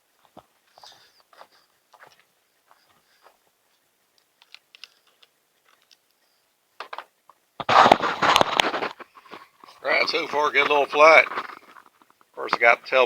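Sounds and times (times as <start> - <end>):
short rustles: 7.6 - 12.3.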